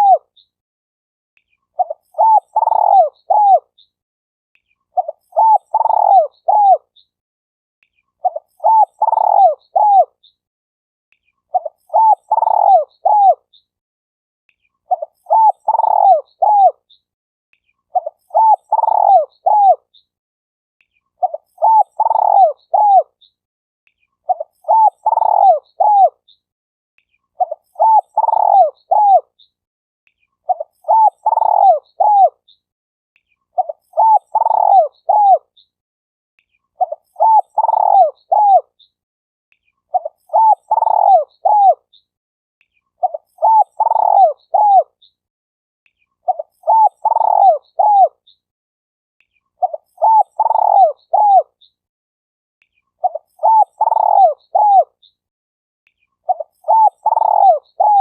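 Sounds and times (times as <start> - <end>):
dove cooing: 0.0 - 0.2, 1.8 - 3.7, 5.0 - 6.8, 8.2 - 10.1, 11.5 - 13.4, 14.9 - 16.8, 18.0 - 19.8, 21.2 - 23.1, 24.3 - 26.2, 27.4 - 29.3, 30.5 - 32.4, 33.6 - 35.4, 36.8 - 38.7, 39.9 - 41.8, 43.0 - 44.9, 46.3 - 48.2, 49.6 - 51.5, 53.0 - 54.9, 56.3 - 58.0.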